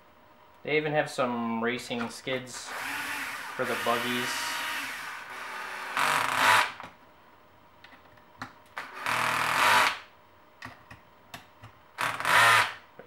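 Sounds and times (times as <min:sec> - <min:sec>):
drill driving screws: 0:02.6 - 0:06.8, 0:08.8 - 0:10.1, 0:12.0 - 0:12.8.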